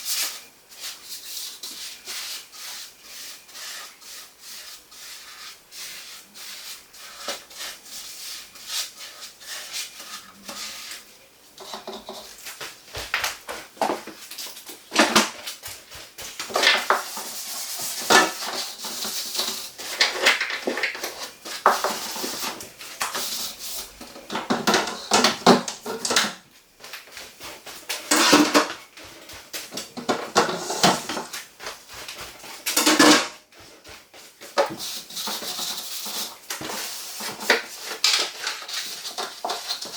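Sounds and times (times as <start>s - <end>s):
rubbing and wiping: 0.0s - 26.1s, 26.8s - 39.9s
items clattering and knocking: 11.5s - 39.9s.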